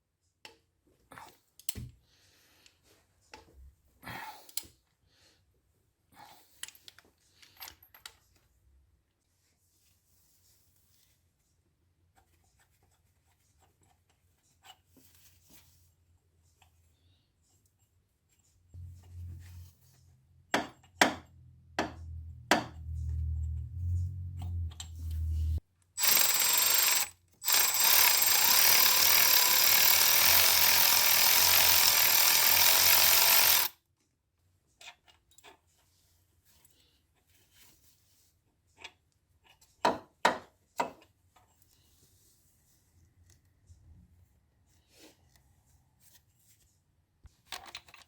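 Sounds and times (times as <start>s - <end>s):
low hum: 18.8s - 20.0s, 21.6s - 25.6s
power tool running: 26.0s - 33.7s
sharp clicks of tools: 26.0s - 33.7s.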